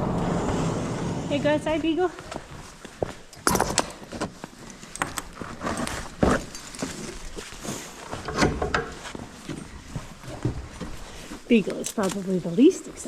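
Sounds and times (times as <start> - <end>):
horse footsteps and knocks: 2.3 - 12.4.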